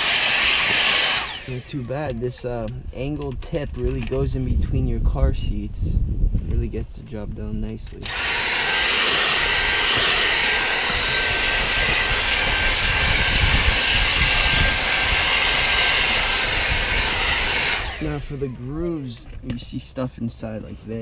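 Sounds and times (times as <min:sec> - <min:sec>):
handheld vacuum cleaner running: 0:00.0 - 0:01.7, 0:08.0 - 0:18.3.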